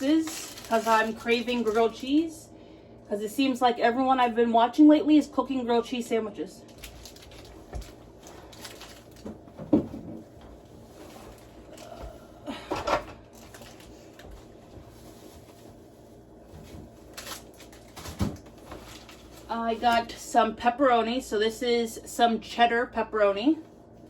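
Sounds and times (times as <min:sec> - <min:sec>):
packaging rustling: 0:00.0 - 0:02.3, 0:06.7 - 0:09.6, 0:13.3 - 0:20.1
groceries knocking: 0:06.8 - 0:10.6.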